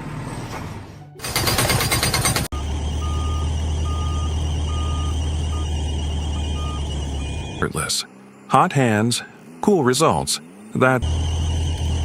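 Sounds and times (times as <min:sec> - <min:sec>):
fast mechanical rattle: 0:01.2 - 0:02.5
low machine drone: 0:11.0 - 0:12.0.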